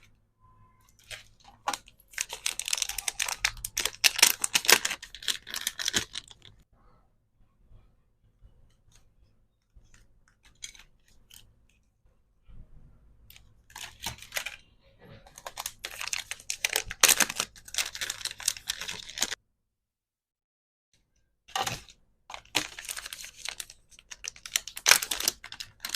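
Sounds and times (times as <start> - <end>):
plastic packaging crinkling: 0.9 - 6.6, 10.4 - 11.4, 13.3 - 14.6, 15.2 - 19.4, 21.5 - 25.9.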